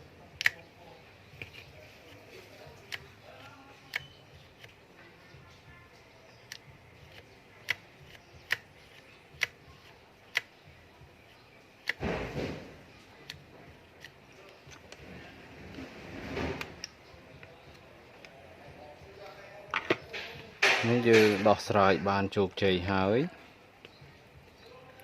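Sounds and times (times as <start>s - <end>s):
sharp small clicks: 0.4s - 0.7s, 2.8s - 4.8s, 6.3s - 10.6s, 11.2s - 12.0s
scraping rustles: 14.6s - 16.8s.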